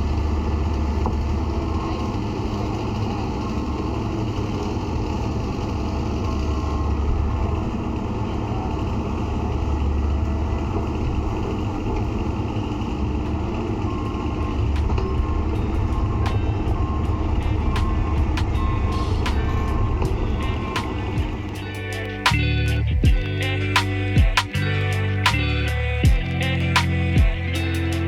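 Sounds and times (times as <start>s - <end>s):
excavator diesel engine rumbling: 0.0s - 28.0s
faint short beeps: 13.4s - 22.8s.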